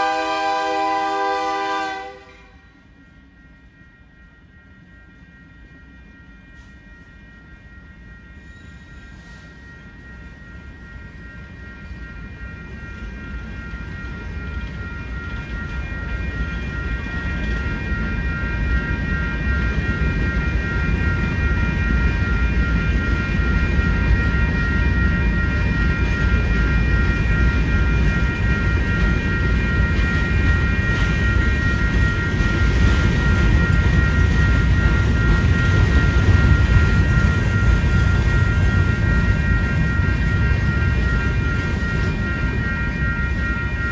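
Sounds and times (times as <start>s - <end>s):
freight train rumbling: 0.0s - 43.9s
high-pitched ringing: 0.0s - 43.9s.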